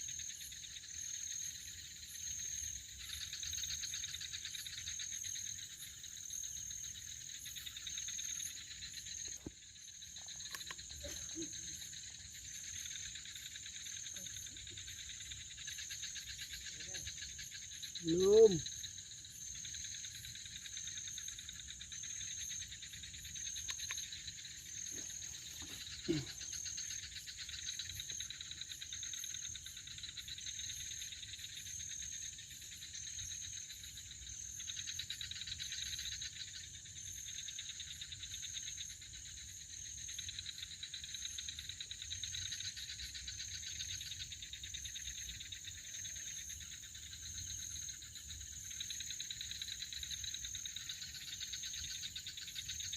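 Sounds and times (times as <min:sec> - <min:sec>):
crickets and insects chirring: 0:00.0 - 0:52.9.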